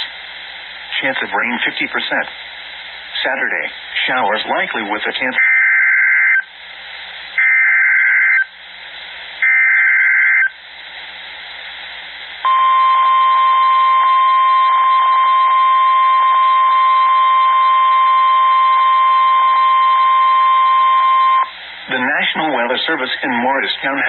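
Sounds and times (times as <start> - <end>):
radio hiss: 0.0 - 5.6, 6.2 - 12.5, 18.2 - 24.0
steady warning alarm tone: 5.4 - 6.5, 7.4 - 8.5, 9.4 - 10.6, 12.4 - 21.6.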